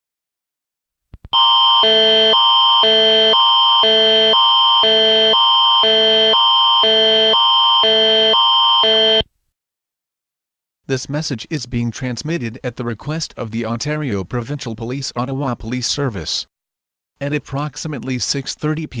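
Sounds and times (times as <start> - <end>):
alert signal alternating chords: 1.4 - 9.2.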